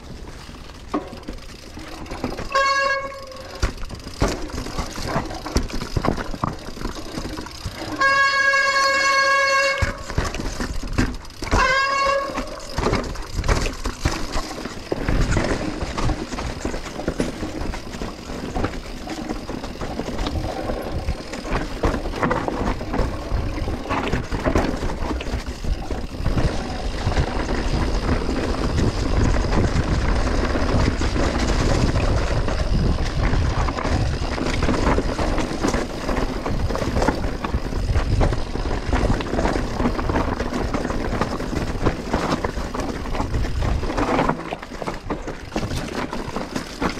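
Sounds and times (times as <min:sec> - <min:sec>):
bike rattling over bumps: 0:00.0 - 0:46.9
bike tyre noise on dirt: 0:00.0 - 0:46.9
wind rumbling on microphone: 0:04.7 - 0:46.9.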